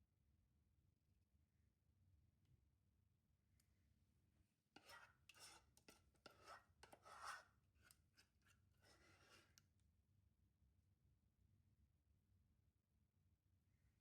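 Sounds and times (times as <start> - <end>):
scraping and rubbing handling noises: 4.8 - 9.6.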